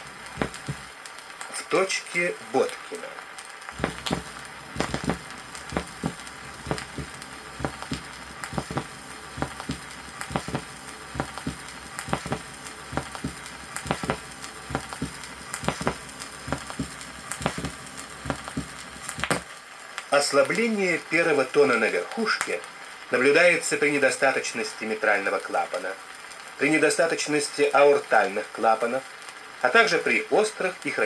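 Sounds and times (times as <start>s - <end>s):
vinyl surface noise: 0.0s - 1.0s, 3.7s - 19.6s
heartbeat lub-dub: 0.4s - 0.9s, 3.8s - 19.4s.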